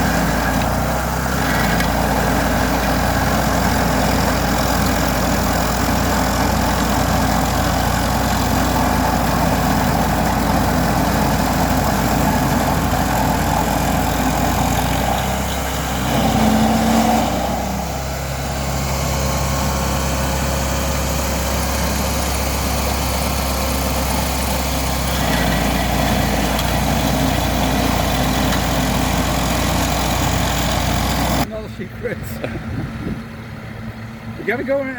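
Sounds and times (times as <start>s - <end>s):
stump grinder engine running: 0.0s - 31.5s.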